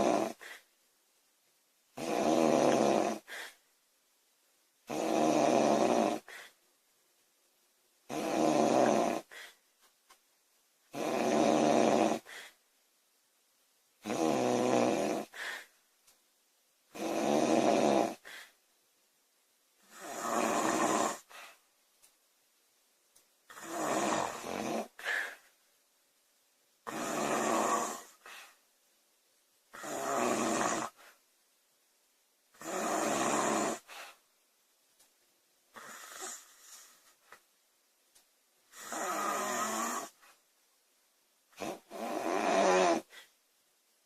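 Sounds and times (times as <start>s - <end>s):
woman snoring loudly: 0.0s - 0.6s, 2.0s - 3.5s, 4.9s - 6.4s, 8.1s - 9.5s, 10.9s - 12.5s, 14.0s - 15.6s, 16.9s - 18.4s, 19.9s - 21.3s, 23.5s - 25.4s, 26.8s - 28.2s, 29.7s - 31.0s, 32.6s - 33.9s, 35.7s - 36.6s, 38.7s - 40.2s, 41.6s - 43.1s
soft breath: 3.2s - 3.7s, 6.2s - 6.7s, 9.2s - 9.7s, 12.2s - 12.7s, 15.2s - 15.9s, 18.2s - 18.6s, 21.2s - 21.7s, 24.9s - 25.6s, 28.0s - 28.7s, 33.8s - 34.3s, 35.7s - 37.4s, 43.0s - 43.4s.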